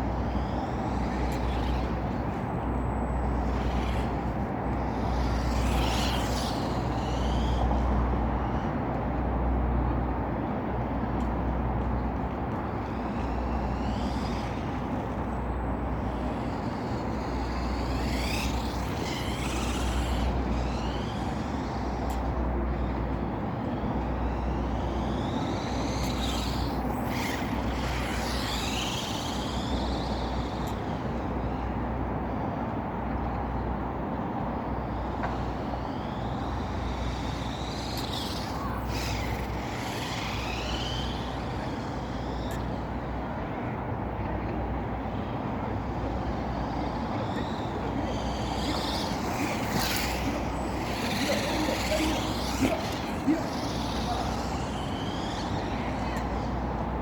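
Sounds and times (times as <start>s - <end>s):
electric motors whining: 0.0s - 10.2s, 10.8s - 57.0s.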